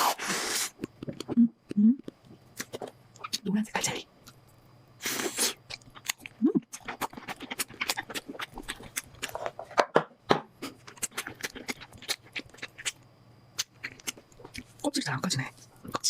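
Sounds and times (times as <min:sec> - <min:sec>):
chewing crunching: 0:05.6 - 0:09.5, 0:10.8 - 0:14.8.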